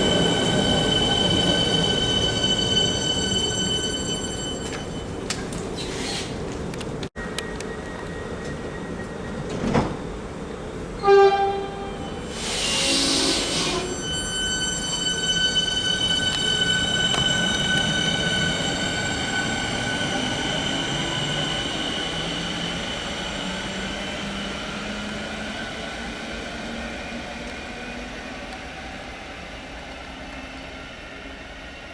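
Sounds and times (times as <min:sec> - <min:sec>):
train motor whine and rumble: 0:00.0 - 0:30.8
train horn toot: 0:11.0 - 0:15.7
air hiss: 0:12.3 - 0:13.8.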